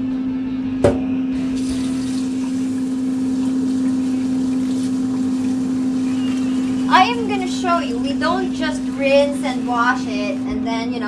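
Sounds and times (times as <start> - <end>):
low hum: 0.0 - 11.0
tap water running into pot: 1.4 - 7.3.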